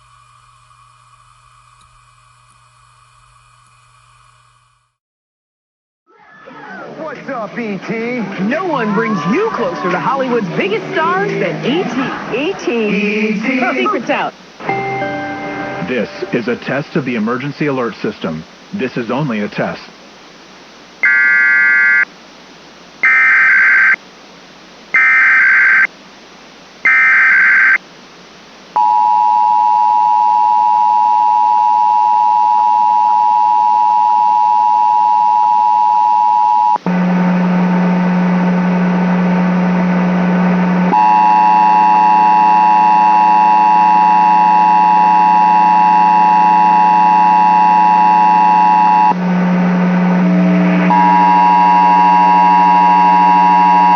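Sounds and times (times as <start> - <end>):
buzzy tone with low hum: 0.0 - 5.0, 7.0 - 21.0, 36.8 - 53.9
two-tone attention signal: 14.6 - 17.2, 40.9 - 49.4, 50.0 - 53.9.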